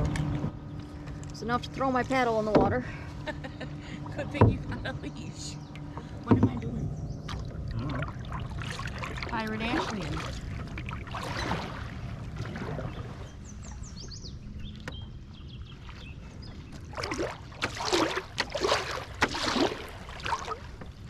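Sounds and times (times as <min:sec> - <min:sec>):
low rumble: 0:00.0 - 0:17.5
paddle splashing in water: 0:05.8 - 0:21.0.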